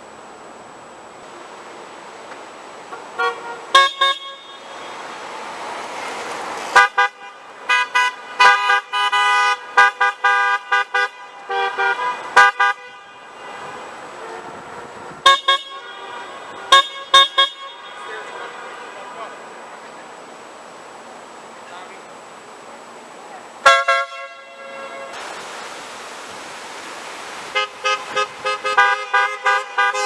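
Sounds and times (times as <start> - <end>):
passing traffic: 0.0 - 30.0
car horns honking: 2.9 - 5.3, 6.7 - 20.1, 23.6 - 25.2, 27.5 - 30.0.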